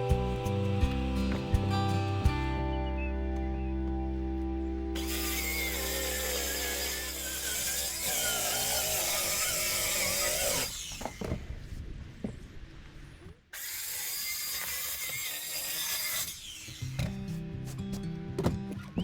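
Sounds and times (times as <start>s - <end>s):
power tool running: 5.0s - 11.4s.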